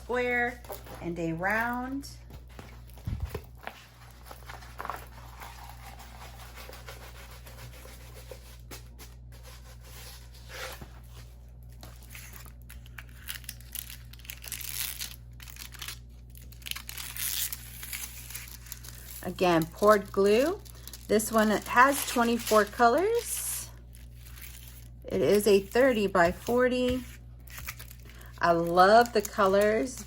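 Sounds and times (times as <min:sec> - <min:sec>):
plastic packaging crinkling: 0:11.6 - 0:30.0.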